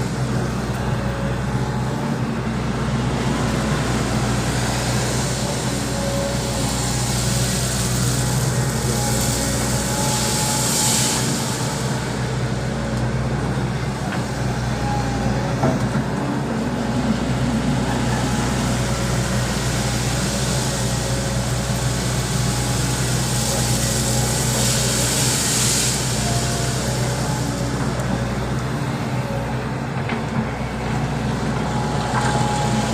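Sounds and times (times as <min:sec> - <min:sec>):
excavator diesel engine running: 0:00.0 - 0:32.9
hiss: 0:04.3 - 0:12.6, 0:18.5 - 0:28.7.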